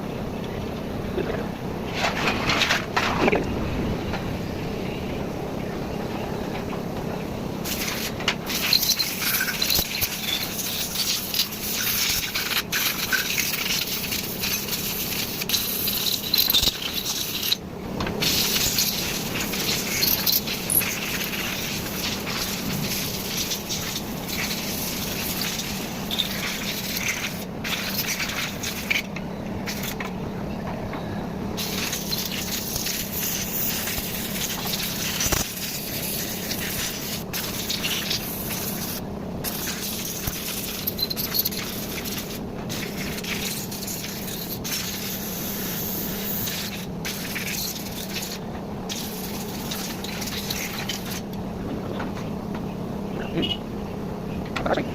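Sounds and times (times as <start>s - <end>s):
compressed air hissing: 7.6s - 17.6s, 18.2s - 30.0s, 31.6s - 51.3s.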